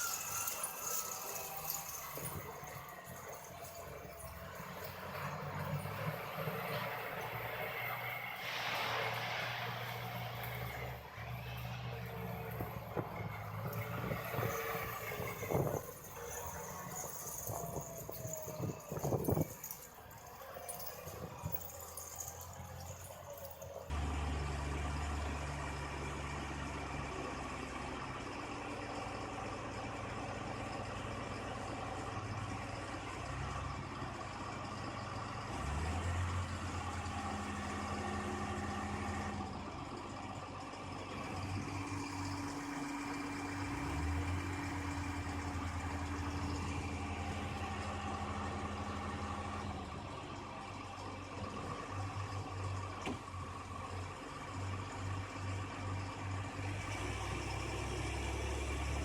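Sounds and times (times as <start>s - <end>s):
diesel engine revving: 0.0s - 59.0s.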